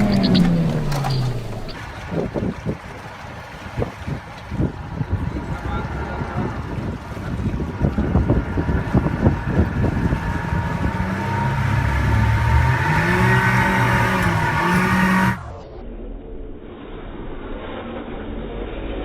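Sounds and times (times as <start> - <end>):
knocks and rattles: 0.0 - 1.8
vehicle engine revving: 0.0 - 1.8, 7.9 - 15.6.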